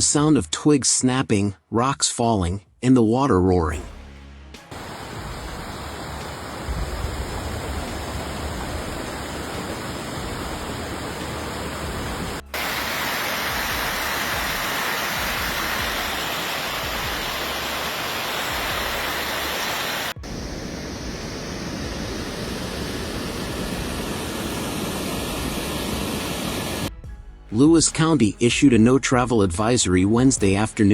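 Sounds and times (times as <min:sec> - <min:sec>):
floodwater rushing down a street: 0:04.7 - 0:20.4.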